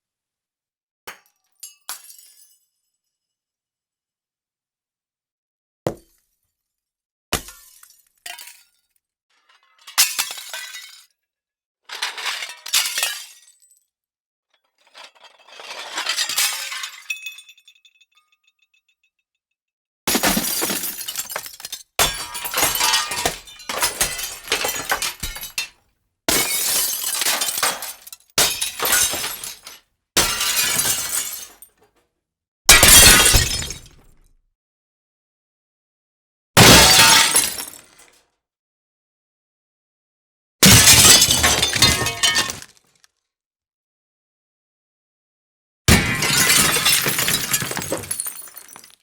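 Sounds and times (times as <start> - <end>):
glass smashing: 20.1 - 25.7, 26.3 - 31.5, 32.7 - 34.1, 36.6 - 37.8, 40.6 - 42.6, 45.9 - 49.0.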